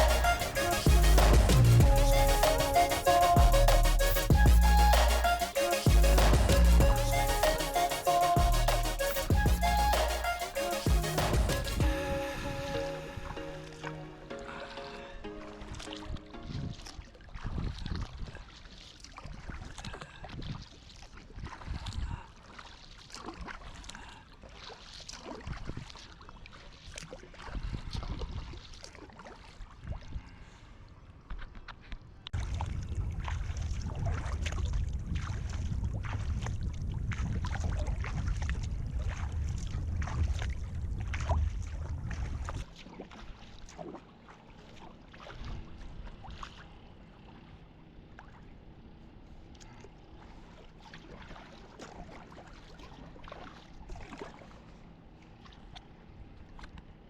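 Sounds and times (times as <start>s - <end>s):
low rumble: 0.0s - 13.6s, 32.4s - 42.6s
water lapping at hull: 0.0s - 57.0s
kayak paddle splashing: 13.0s - 30.6s, 32.4s - 57.0s.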